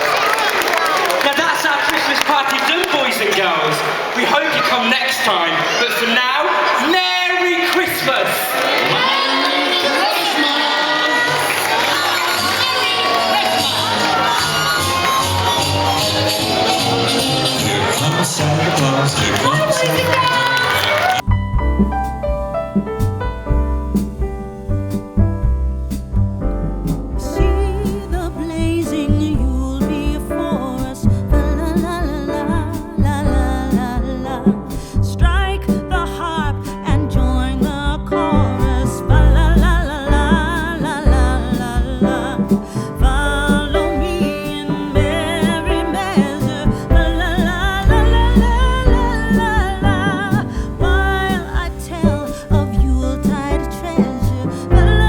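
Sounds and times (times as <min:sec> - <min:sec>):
upbeat christmas song: 0:08.0 - 0:55.0
guitar: 0:12.1 - 0:19.8
bass: 0:12.2 - 0:19.6, 0:20.9 - 0:55.0
person singing with vibrato: 0:27.3 - 0:55.0.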